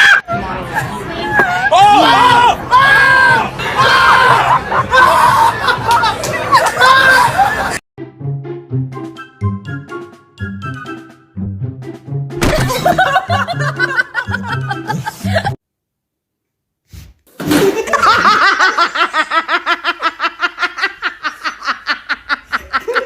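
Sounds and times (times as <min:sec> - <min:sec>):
background music: 0:03.4 - 0:15.6
people laughing: 0:04.1 - 0:07.8, 0:12.7 - 0:15.6, 0:17.6 - 0:23.0.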